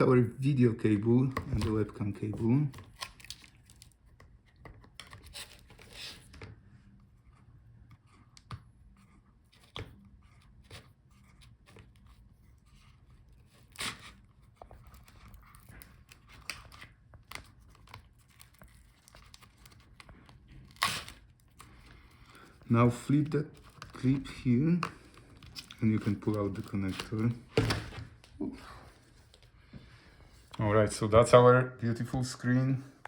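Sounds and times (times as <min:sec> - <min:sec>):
peeling tearing noises: 0:02.7 - 0:04.1, 0:13.5 - 0:21.8.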